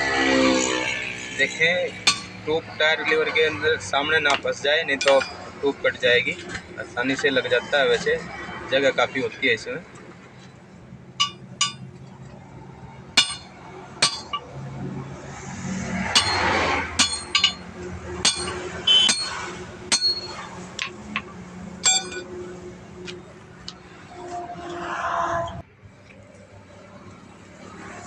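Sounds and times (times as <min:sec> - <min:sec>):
hammer striking metal lever: 0:11.2 - 0:11.8, 0:13.2 - 0:13.4, 0:14.0 - 0:14.4, 0:17.0 - 0:17.6.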